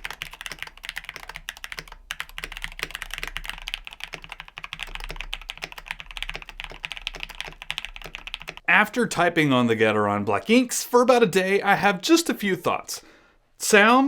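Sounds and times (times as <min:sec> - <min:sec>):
typing on mechanical keyboard: 0:00.0 - 0:08.6.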